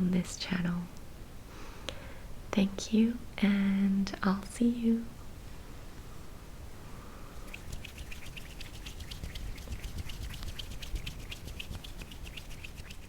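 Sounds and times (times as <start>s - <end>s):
light rapid clicks: 7.4s - 13.0s.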